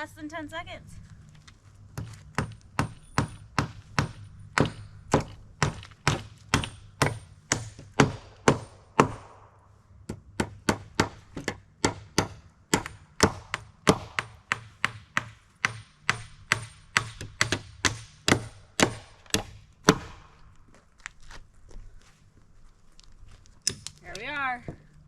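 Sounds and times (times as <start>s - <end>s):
hammer driving nails into wood: 2.0s - 9.5s, 10.1s - 20.4s.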